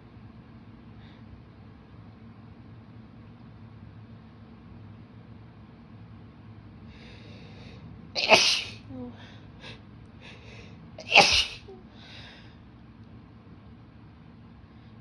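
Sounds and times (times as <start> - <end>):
woman sneezing: 8.2 - 8.9, 11.0 - 11.8.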